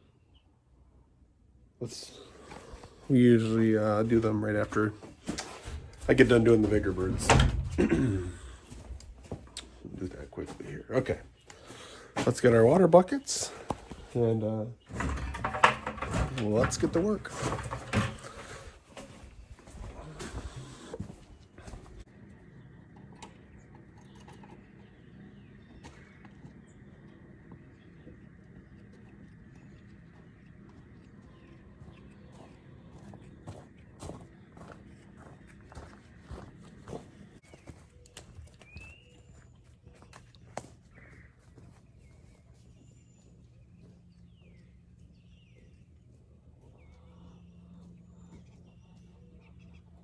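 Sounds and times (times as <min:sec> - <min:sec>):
low steady hum: 0:14.8 - 0:37.4
baby chicks peeping: 0:22.5 - 0:40.2.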